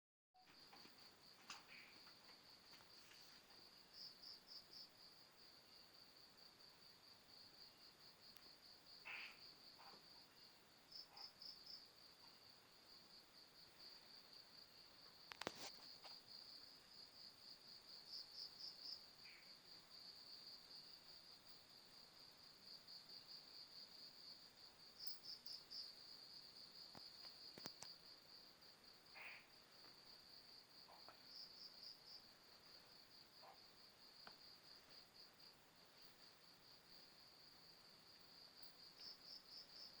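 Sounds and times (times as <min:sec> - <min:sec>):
crickets chirping: 0:00.4 - 0:40.0.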